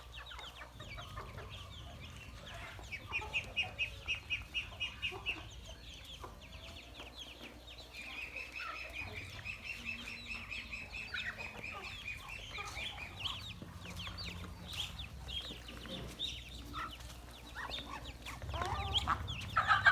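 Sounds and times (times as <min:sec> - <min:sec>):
ducklings peeping: 0:00.0 - 0:19.9.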